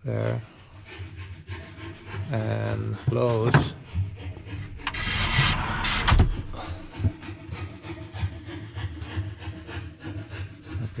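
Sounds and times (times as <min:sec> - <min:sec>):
sliding door rolling shut: 0:04.8 - 0:06.9
door thud: 0:05.8 - 0:07.2.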